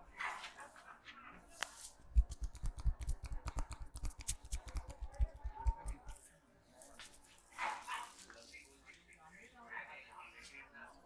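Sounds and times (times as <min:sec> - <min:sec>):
hands slapping in massage: 0:02.1 - 0:06.2.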